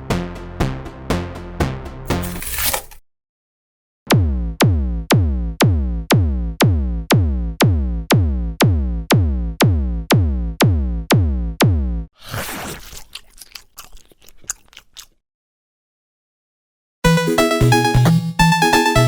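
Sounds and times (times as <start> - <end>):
synthesized drum hits: 4.1 - 12.1.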